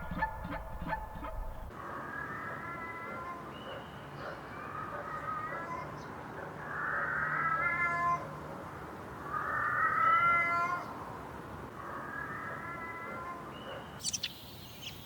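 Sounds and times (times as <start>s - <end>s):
cat meowing: 7.3s - 8.3s, 9.9s - 10.9s.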